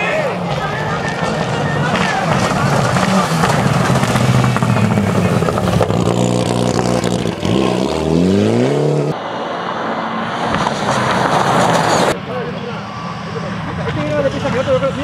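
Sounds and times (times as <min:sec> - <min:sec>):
rally car engines at full throttle: 0:00.0 - 0:15.0.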